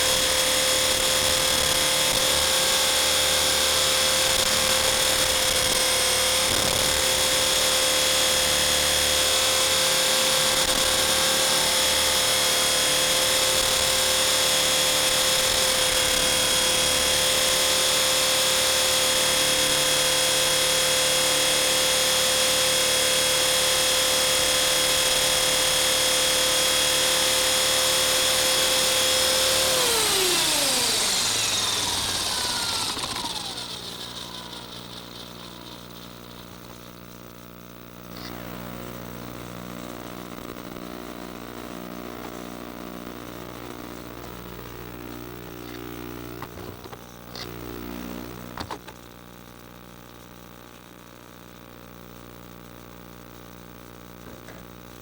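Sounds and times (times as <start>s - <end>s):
rc helicopter rotor whine: 0.0s - 37.0s.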